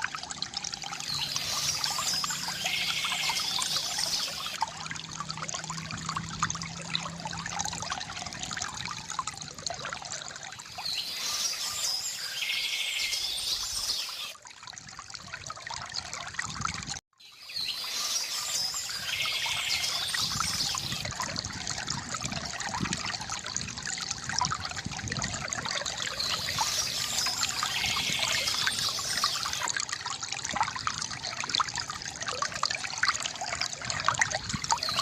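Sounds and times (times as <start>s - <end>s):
water trickling from fountain: 0.0s - 35.0s
songbird singing: 1.0s - 4.6s, 10.7s - 14.3s, 17.2s - 21.0s, 26.1s - 29.7s, 34.7s - 35.0s.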